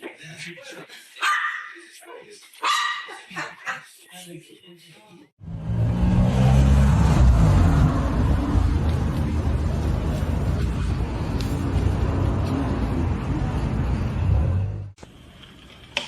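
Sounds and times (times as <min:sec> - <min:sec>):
road or wind noise: 0:05.4 - 0:15.0
vehicle engine rumble: 0:05.4 - 0:15.0.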